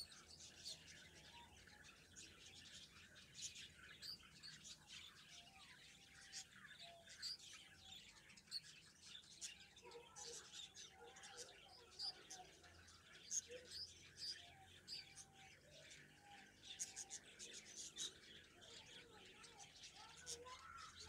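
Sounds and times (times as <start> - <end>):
finches chirping: 0.0 - 21.0.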